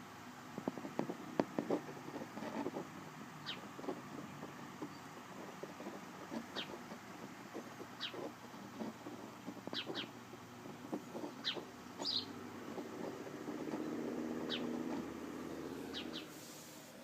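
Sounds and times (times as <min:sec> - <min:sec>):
sparrow chirping: 0:03.4 - 0:16.4.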